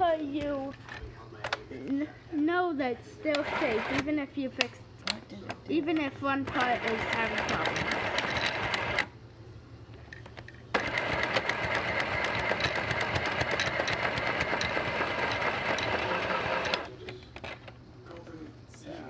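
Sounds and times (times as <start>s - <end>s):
electric sewing machine stitching: 3.3s - 4.1s, 6.4s - 9.1s, 10.8s - 16.9s.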